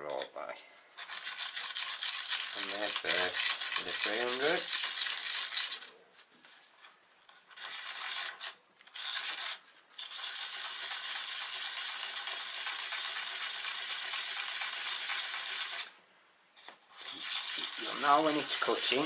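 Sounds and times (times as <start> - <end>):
cutter scraping on hone: 1.0 - 5.9, 16.9 - 19.0.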